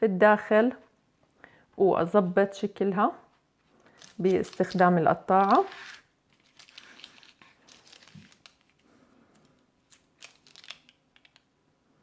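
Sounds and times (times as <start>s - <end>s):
paper rustling: 3.9s - 9.0s.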